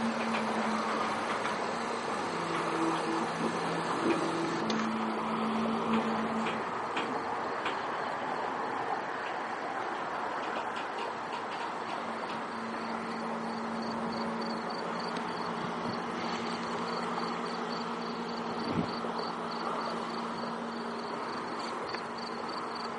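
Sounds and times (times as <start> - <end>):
freight train rumbling past: 0.0 - 22.9
train wheel clicks: 0.0 - 22.9
insects chirping: 11.6 - 22.9.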